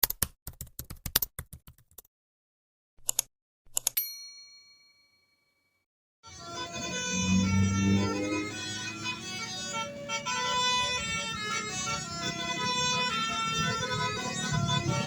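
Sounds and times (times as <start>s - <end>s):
typing clicks: 0.0s - 2.1s, 3.0s - 4.0s
bright bell ding: 4.0s - 5.3s.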